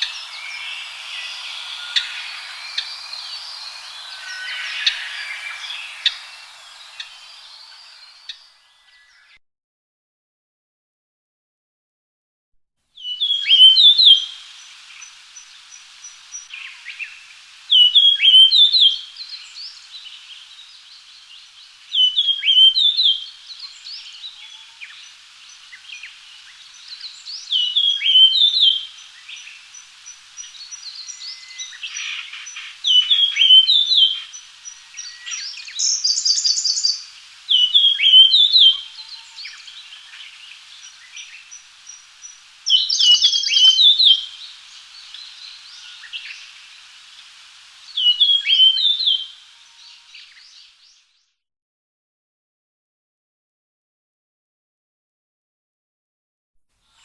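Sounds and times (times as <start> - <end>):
thin high chirps: 0.0 - 9.2
bird whistled song: 0.0 - 9.4, 13.0 - 51.1.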